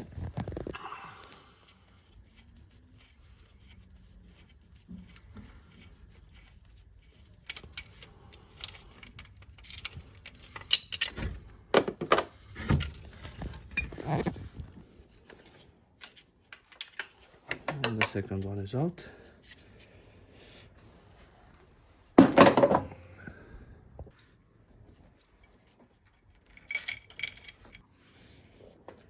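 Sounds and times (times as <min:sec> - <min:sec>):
metal tools clinking and knocking: 0:26.3 - 0:27.9.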